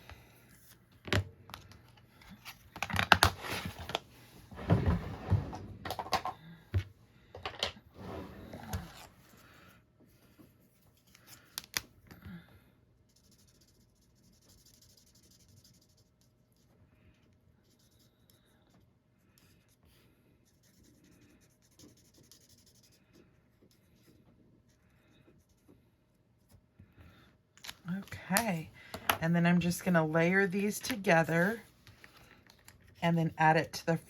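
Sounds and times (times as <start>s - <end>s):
marker scratching on cardstock: 13.1s - 16.7s, 20.4s - 24.8s.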